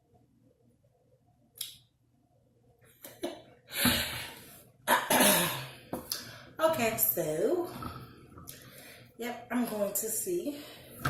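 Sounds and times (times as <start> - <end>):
woman coughing: 4.9 - 5.7.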